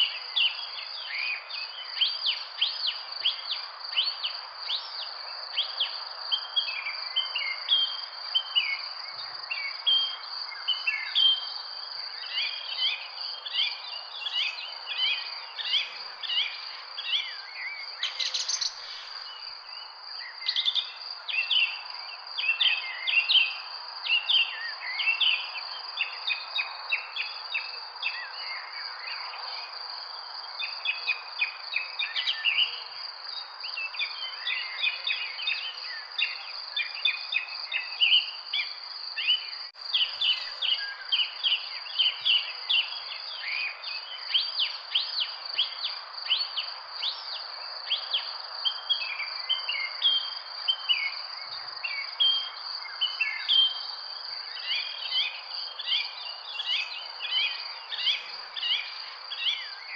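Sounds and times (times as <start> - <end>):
steady background hiss: 0.0 - 25.4, 39.0 - 59.9
birds chirping and singing: 12.4 - 21.7, 39.2 - 42.8
high-pitched insect trill: 34.0 - 52.8.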